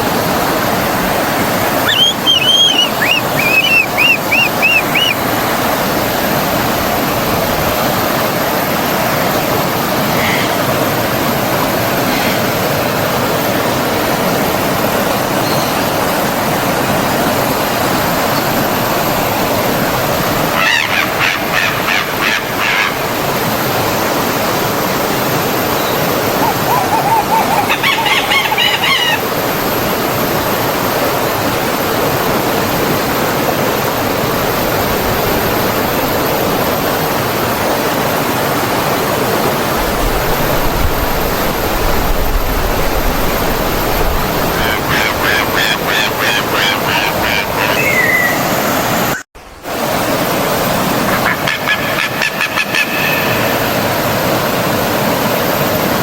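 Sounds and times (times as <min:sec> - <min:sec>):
stream water flowing: 0:00.0 - 0:56.0
birds chirping: 0:01.6 - 0:05.3, 0:25.7 - 0:29.4, 0:44.2 - 0:49.2
low bird calls: 0:01.7 - 0:05.2, 0:25.8 - 0:29.3, 0:43.9 - 0:49.2.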